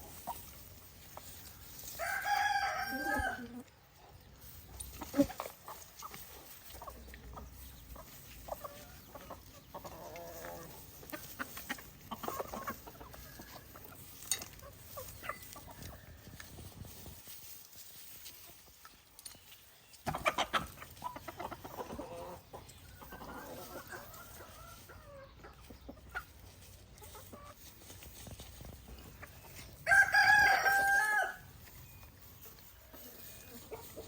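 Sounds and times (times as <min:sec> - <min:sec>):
chickens clucking: 0:00.0 - 0:34.0
rooster crowing: 0:02.0 - 0:03.4, 0:29.9 - 0:31.4.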